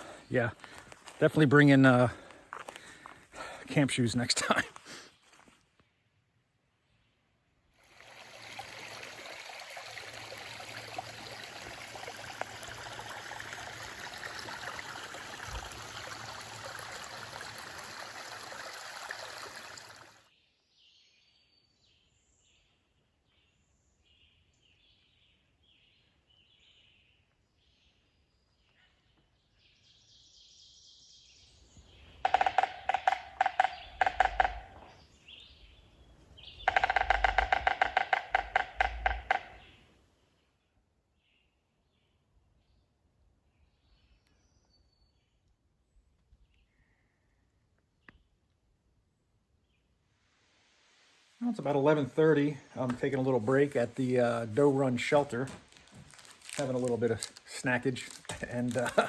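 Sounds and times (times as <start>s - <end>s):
running water: 7.8s - 20.3s, 51.4s - 59.0s.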